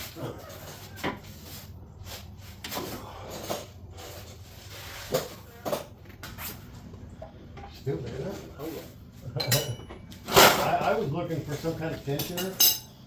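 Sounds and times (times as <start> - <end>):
hand tools knocking on metal parts: 12.1 - 12.9.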